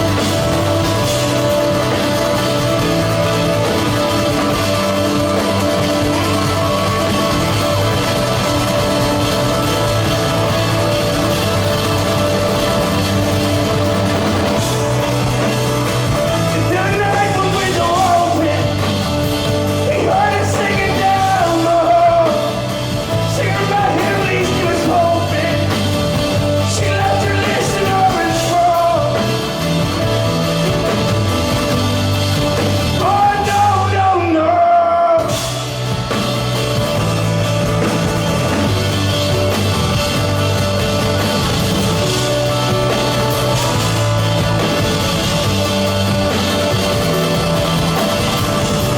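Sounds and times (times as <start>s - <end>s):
live band playing: 0.0s - 48.9s
man singing: 16.2s - 19.1s, 19.7s - 29.5s, 32.9s - 35.5s.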